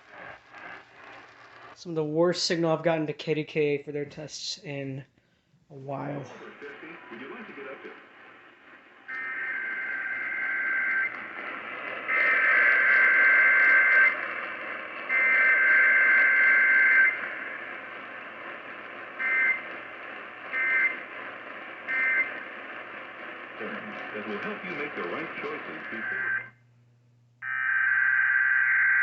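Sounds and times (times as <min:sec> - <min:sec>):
radio hiss: 0:00.0 - 0:01.8, 0:05.7 - 0:26.5
buzzy two-tone data bursts: 0:09.1 - 0:17.5.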